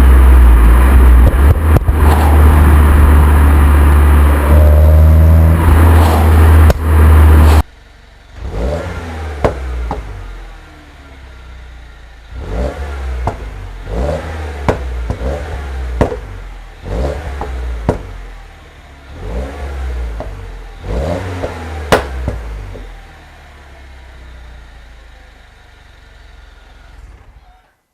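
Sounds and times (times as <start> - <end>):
exhaust pops and crackles: 0.0 - 7.8, 9.4 - 10.2, 13.2 - 14.0, 14.6 - 18.5, 20.0 - 23.1
car engine revving: 0.0 - 27.6
wind noise: 0.7 - 7.6.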